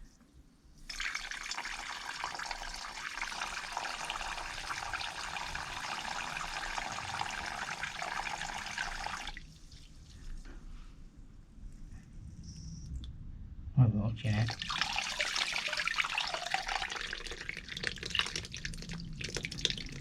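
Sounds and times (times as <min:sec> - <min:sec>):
water rushing from pipework: 0:00.8 - 0:10.5, 0:14.4 - 0:20.0.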